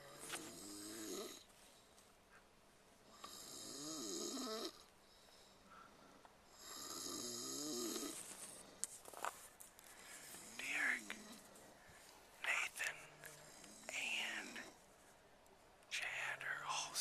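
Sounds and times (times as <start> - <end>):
person snoring: 0.0 - 1.5, 3.1 - 4.9, 6.5 - 8.3.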